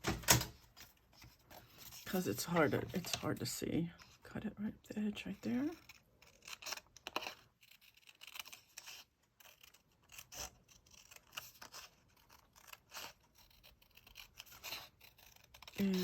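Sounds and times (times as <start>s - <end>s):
scissors snipping paper: 5.4s - 16.0s.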